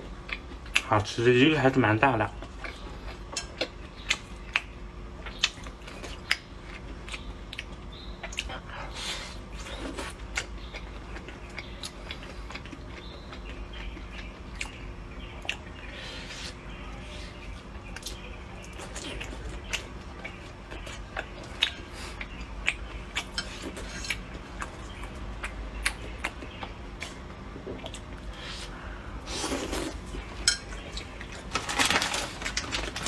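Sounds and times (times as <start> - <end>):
person chewing food: 0.0 - 0.8, 2.4 - 33.0
steady low hum: 0.0 - 33.0.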